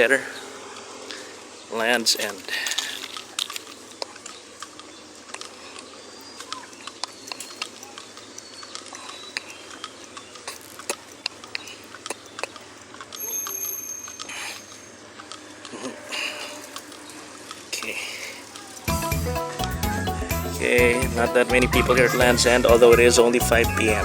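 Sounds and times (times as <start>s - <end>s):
outdoor background noise: 0.0s - 24.0s
high ringing tone: 13.2s - 15.0s.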